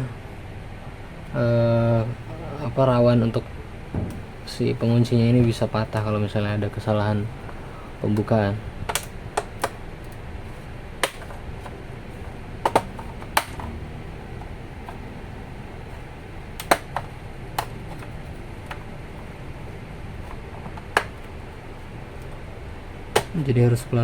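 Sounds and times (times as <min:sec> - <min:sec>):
low background noise: 0:00.0 - 0:24.0
plastic clips clicking loose: 0:08.9 - 0:10.2.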